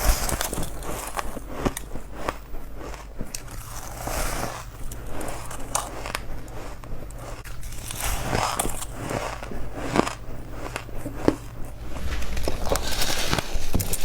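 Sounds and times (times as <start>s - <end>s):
ice crunching between teeth: 0.0s - 14.0s.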